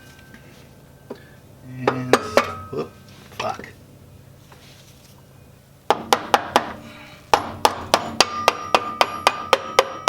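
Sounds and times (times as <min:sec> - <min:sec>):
hammer tapping on metal: 0:05.9 - 0:10.0.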